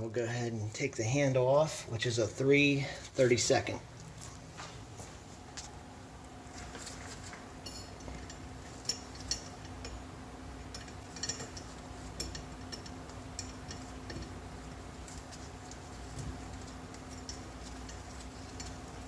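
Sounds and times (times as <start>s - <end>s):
faint steady hum: 0.0s - 19.0s.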